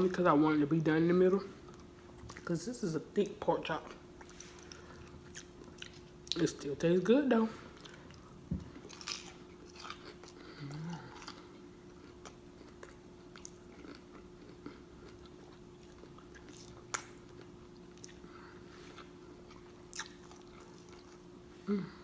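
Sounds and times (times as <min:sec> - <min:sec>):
chewing food: 0:01.6 - 0:02.5, 0:03.8 - 0:06.6, 0:07.6 - 0:21.4.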